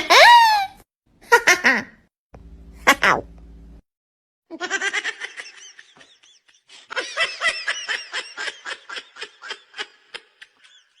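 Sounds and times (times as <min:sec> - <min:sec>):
high-pitched laughter: 0:00.0 - 0:01.9.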